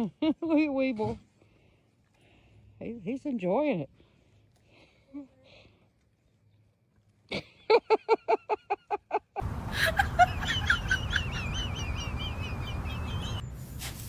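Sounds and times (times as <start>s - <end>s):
small birds chirping: 10.4s - 13.7s.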